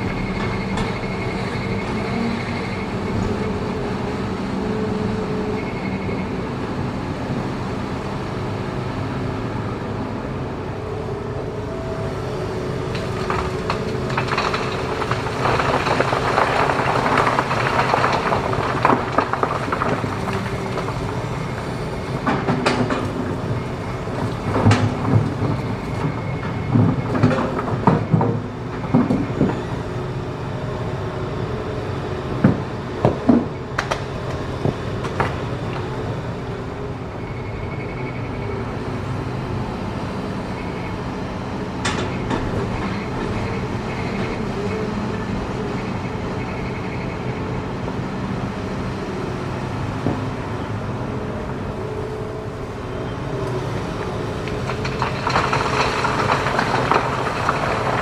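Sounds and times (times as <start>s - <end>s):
diesel engine under load: 0.0s - 58.0s
rock scraping and grinding: 12.9s - 26.0s, 54.5s - 58.0s.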